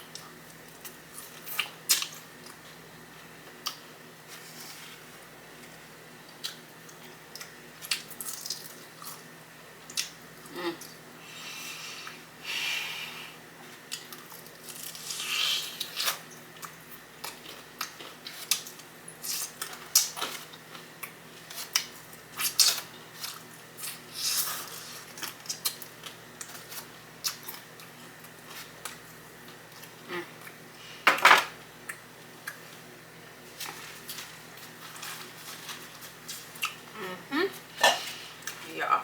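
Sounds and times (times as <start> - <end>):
person chewing food: 33.5 - 36.9.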